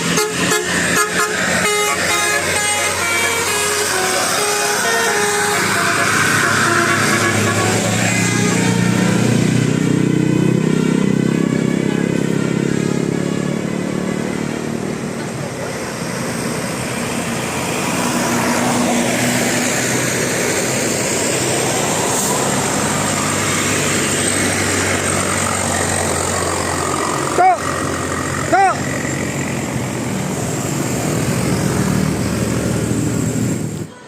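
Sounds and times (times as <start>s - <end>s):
bus multi-tone horn: 0.0s - 13.6s, 33.3s - 34.0s
road traffic: 0.0s - 34.0s
vehicle passing: 0.0s - 34.0s.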